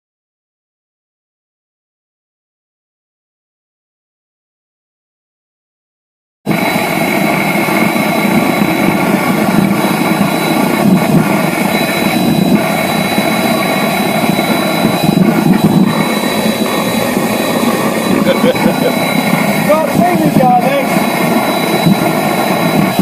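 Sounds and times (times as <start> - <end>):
furnace burner roaring: 6.5 - 23.0
thin high whistle: 6.5 - 23.0.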